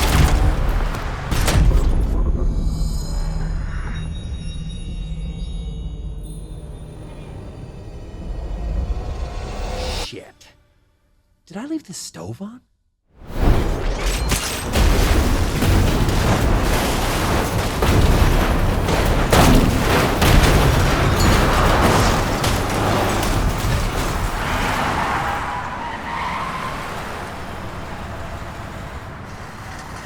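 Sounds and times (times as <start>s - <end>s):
sharp crash impacts: 0.0s - 2.4s, 13.2s - 26.1s.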